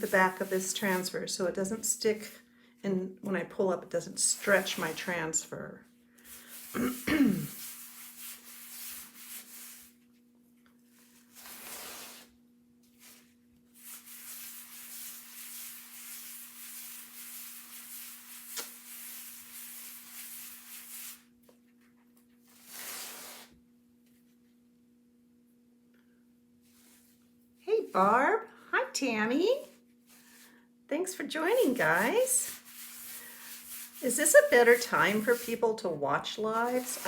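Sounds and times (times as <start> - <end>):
cloth scrubbing hiss: 4.2 - 5.2, 6.2 - 10.0, 11.0 - 12.4, 13.0 - 21.3, 22.4 - 23.6, 31.4 - 35.7, 36.4 - 37.0.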